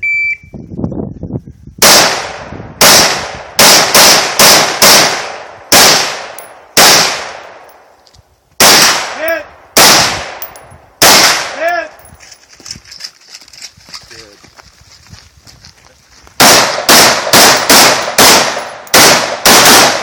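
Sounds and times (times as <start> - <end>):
gunshots with long echo: 1.8 - 7.8, 8.6 - 11.7, 16.4 - 20.0.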